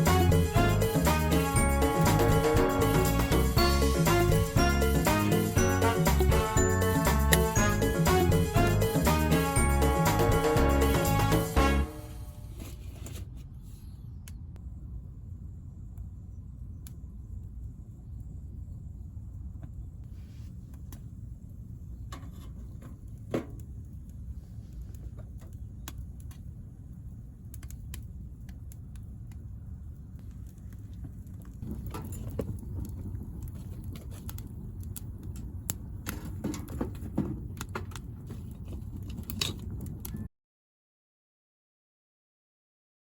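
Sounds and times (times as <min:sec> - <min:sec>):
wood fire crackling: 0:00.0 - 0:12.2, 0:20.5 - 0:40.3
stove low rumble: 0:00.0 - 0:40.3.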